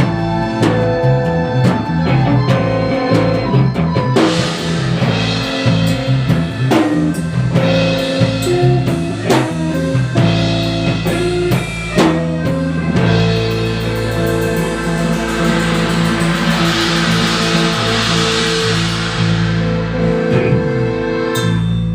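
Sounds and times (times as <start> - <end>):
instrumental band music: 0.0 - 21.9
sharp drum hits: 4.2 - 9.7, 13.0 - 21.9.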